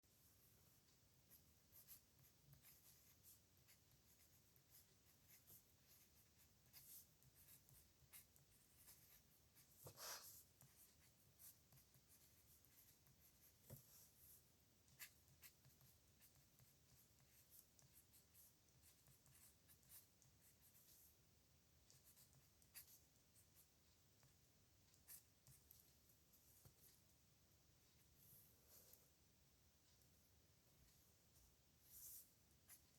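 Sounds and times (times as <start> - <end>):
pen scratching on paper: 1.3 - 21.1, 21.9 - 24.3, 24.9 - 27.0.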